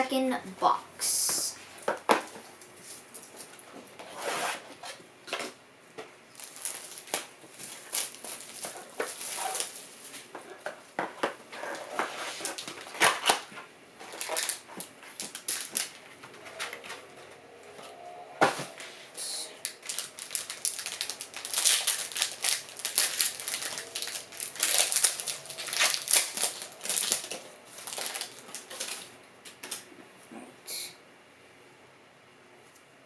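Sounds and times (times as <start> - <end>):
packaging crinkling and tearing: 6.3 - 10.3, 11.2 - 17.1, 19.6 - 29.9.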